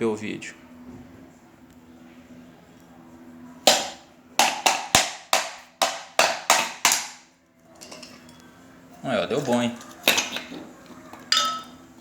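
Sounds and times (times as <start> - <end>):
sharp knocks on metal: 3.7 - 7.2.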